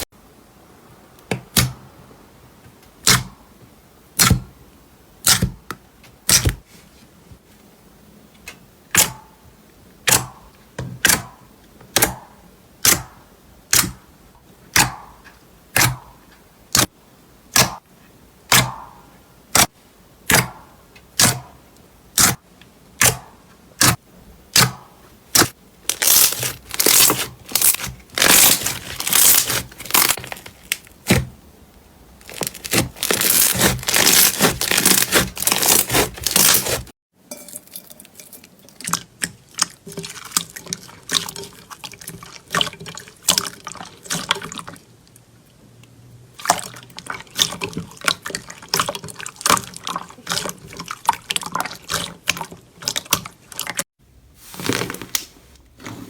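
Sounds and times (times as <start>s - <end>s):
slime squelching and popping: 23.8s - 31.3s, 32.2s - 36.9s.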